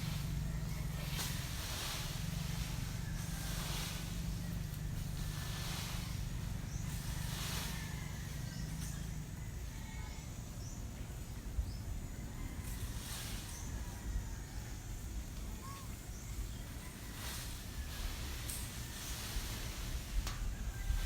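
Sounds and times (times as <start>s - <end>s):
rake swishing through dry leaves: 0.0s - 9.2s, 12.6s - 21.0s
steady low rumble: 0.0s - 21.0s.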